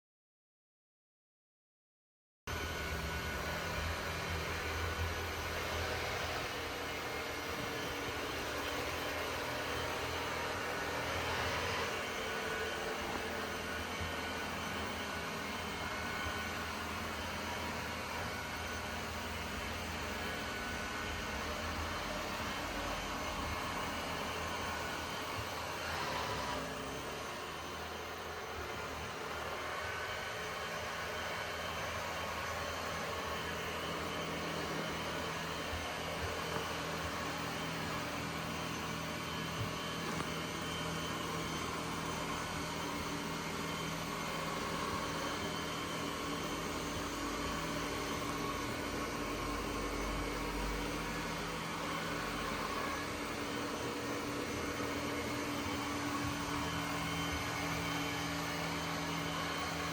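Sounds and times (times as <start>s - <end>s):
robot vacuum motor whirring: 2.6s - 59.9s.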